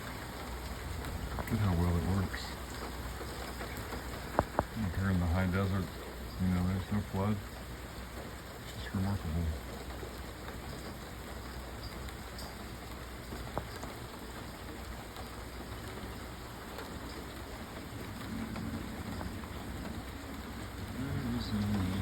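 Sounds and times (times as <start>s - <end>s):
light rain falling: 0.0s - 22.0s
small tick: 13.3s - 14.0s.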